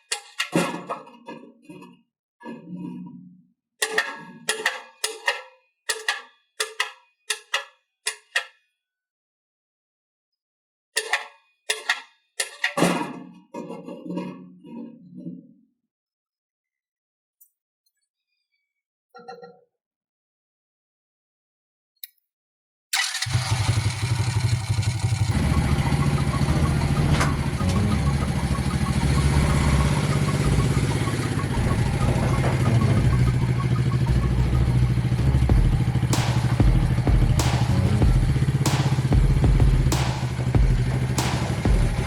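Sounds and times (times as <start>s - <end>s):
small engine running: 23.0s - 42.0s
sharp metal clanks: 35.5s - 42.0s.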